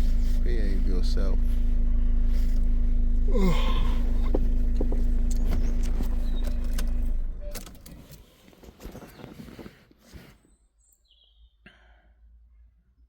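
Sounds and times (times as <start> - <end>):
car engine running: 0.0 - 9.7.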